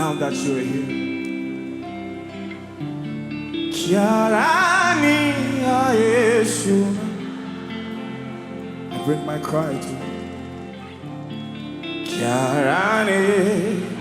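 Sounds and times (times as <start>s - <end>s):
soft instrumental chords: 0.0s - 14.0s
person singing wordless vibrato: 3.5s - 10.8s, 12.0s - 14.0s.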